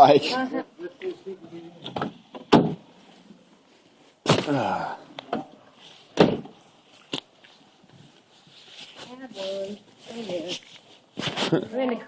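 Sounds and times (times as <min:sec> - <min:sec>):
door thuds: 0:01.9 - 0:02.8, 0:06.2 - 0:06.5.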